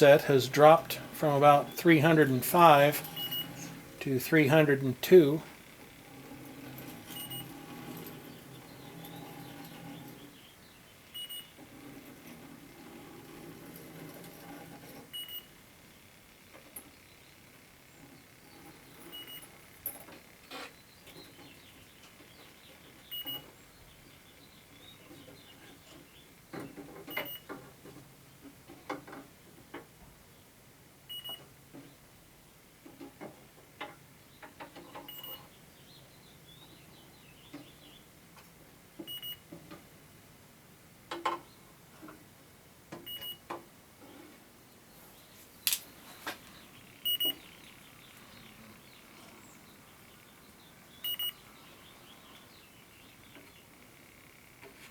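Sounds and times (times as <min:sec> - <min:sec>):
leak detector short beeps: 0:03.2 - 0:03.6, 0:07.2 - 0:07.5, 0:11.2 - 0:11.5, 0:19.1 - 0:19.4, 0:23.1 - 0:23.4, 0:31.1 - 0:31.4, 0:35.1 - 0:35.4, 0:39.1 - 0:39.4, 0:43.1 - 0:43.4, 0:47.0 - 0:47.4, 0:51.0 - 0:51.4.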